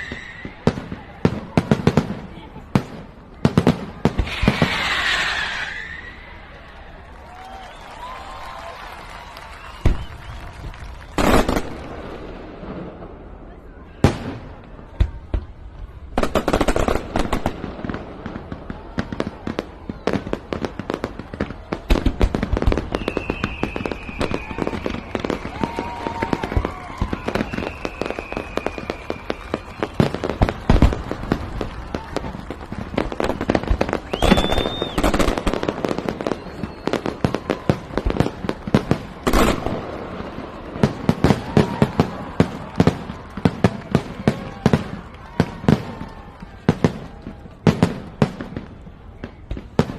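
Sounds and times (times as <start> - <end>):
fireworks whistling: 0.0 - 6.6, 7.3 - 13.1, 20.8 - 49.9
fireworks bangs and crackling: 0.0 - 49.9.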